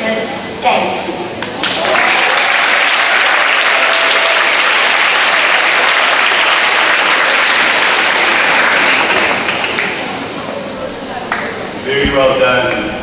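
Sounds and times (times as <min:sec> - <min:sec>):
crowd applauding: 0:01.4 - 0:10.4.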